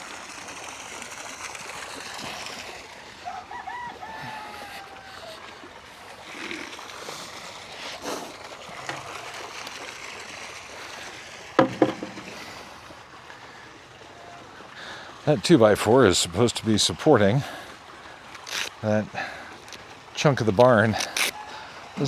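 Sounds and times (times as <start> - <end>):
wood knocking on wood: 11.6 - 12.5.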